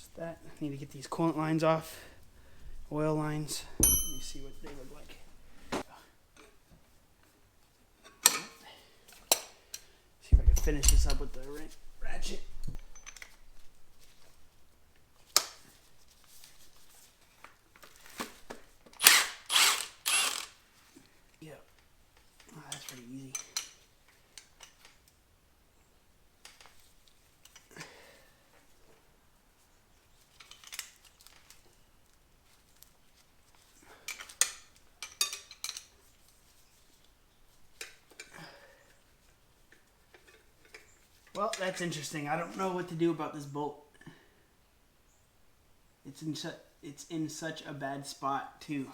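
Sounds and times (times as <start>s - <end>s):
handling tools and metal parts: 0.0s - 5.8s, 10.3s - 14.6s, 34.0s - 36.2s, 39.7s - 41.6s
metal hand tools clinking: 2.5s - 5.8s, 10.4s - 14.2s
sharp metallic click: 3.8s - 5.5s, 10.4s - 13.7s.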